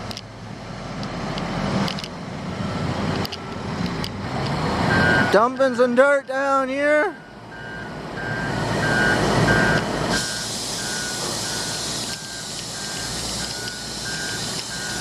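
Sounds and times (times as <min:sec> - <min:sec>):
truck engine running: 0:00.0 - 0:15.0
reversing alarm beeping: 0:02.6 - 0:03.6, 0:04.9 - 0:15.0.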